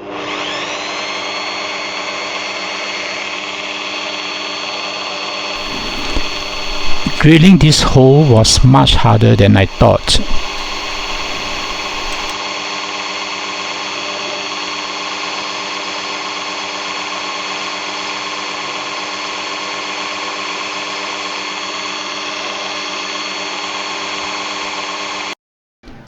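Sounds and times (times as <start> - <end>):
electric drill whining: 5.6 - 12.4.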